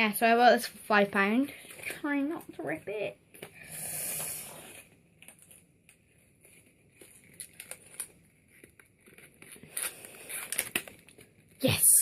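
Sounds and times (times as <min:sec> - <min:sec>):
packaging crinkling and clicking: 0:07.0 - 0:11.4
packaging tearing: 0:07.2 - 0:11.3.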